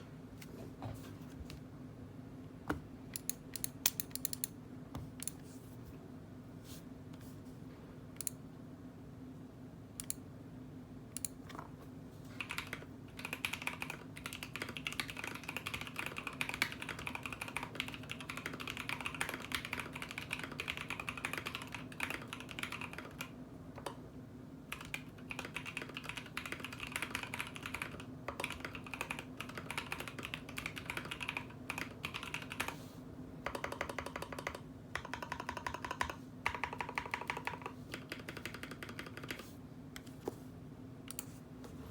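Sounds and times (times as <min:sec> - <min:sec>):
mechanical keyboard typing: 0:12.4 - 0:24.0, 0:24.7 - 0:32.8, 0:33.4 - 0:39.5.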